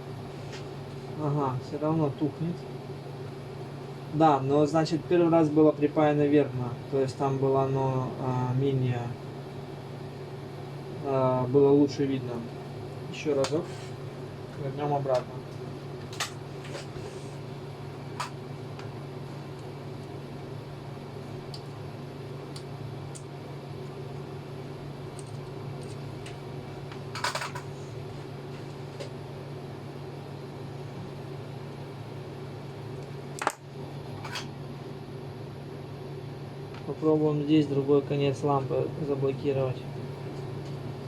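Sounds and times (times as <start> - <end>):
low electrical hum: 0.0 - 41.0
tools and parts clicking and clattering: 27.1 - 27.7.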